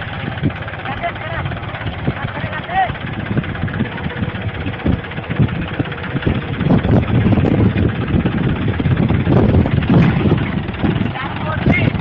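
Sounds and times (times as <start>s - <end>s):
tractor engine chugging: 0.0s - 12.0s
wind on microphone: 1.4s - 12.0s.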